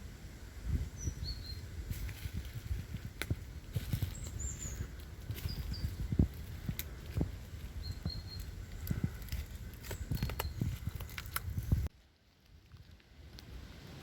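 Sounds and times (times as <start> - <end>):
footsteps on twigs and leaf litter: 1.8 - 13.0.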